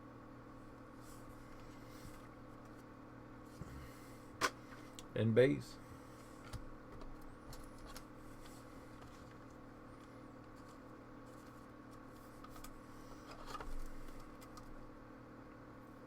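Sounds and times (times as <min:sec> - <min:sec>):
low electrical hum: 0:00.0 - 0:16.0
trading cards rustling and clicking: 0:10.0 - 0:14.8.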